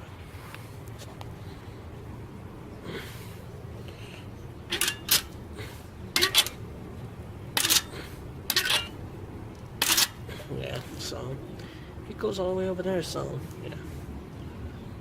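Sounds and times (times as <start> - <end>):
metal kickstand clacking: 4.7 - 5.4, 6.2 - 6.6, 7.6 - 7.9, 8.5 - 8.9.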